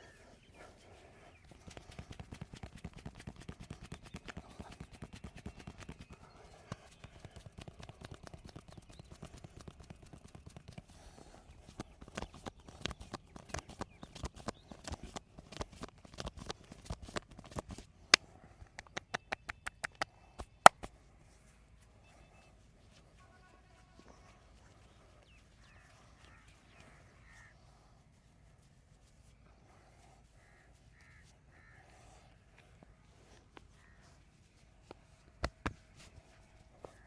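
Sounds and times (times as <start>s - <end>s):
hands slapping and tapping body: 1.4s - 21.0s, 34.8s - 37.0s
sharp snaps: 1.5s - 21.0s, 35.4s - 35.9s.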